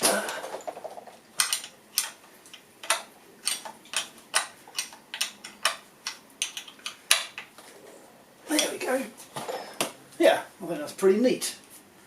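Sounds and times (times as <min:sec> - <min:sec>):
spanner ratchet clicks: 0:01.4 - 0:07.5.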